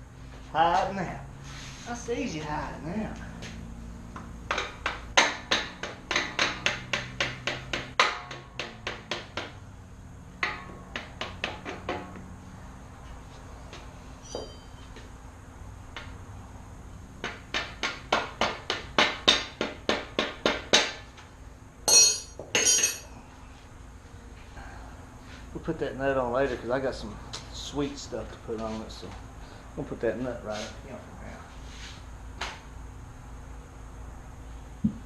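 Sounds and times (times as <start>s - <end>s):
hammer tapping on metal: 4.2s - 9.6s, 10.4s - 12.2s, 17.2s - 21.0s
bright metal clinks: 21.9s - 23.1s.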